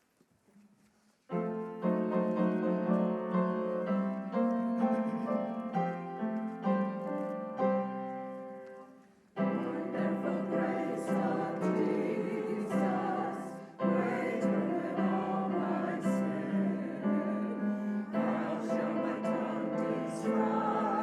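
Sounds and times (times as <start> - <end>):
person singing with piano: 9.4 - 21.0.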